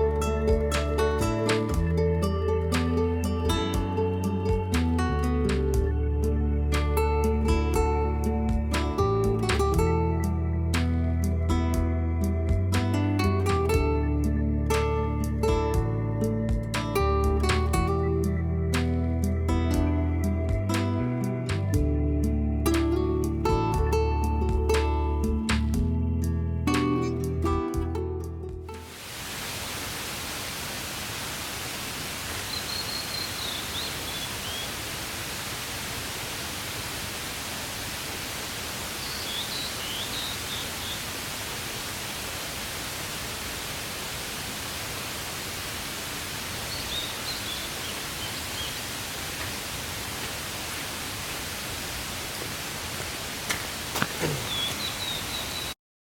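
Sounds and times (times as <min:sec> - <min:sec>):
steady hiss: 0:00.0 - 0:11.4, 0:28.8 - 0:55.8
small bird chirping: 0:32.4 - 0:34.9, 0:38.9 - 0:41.2, 0:46.6 - 0:48.8, 0:54.2 - 0:55.8.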